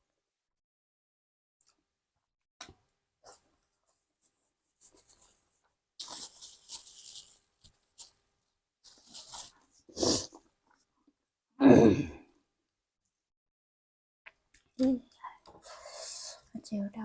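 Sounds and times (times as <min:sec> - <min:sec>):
person grunting: 0:11.6 - 0:12.2.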